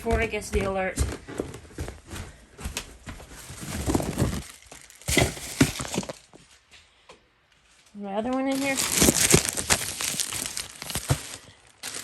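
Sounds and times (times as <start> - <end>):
knocks and thuds of shoes: 0.0 - 6.4, 8.8 - 12.0
rustling and crinkling of shoes: 0.0 - 12.0.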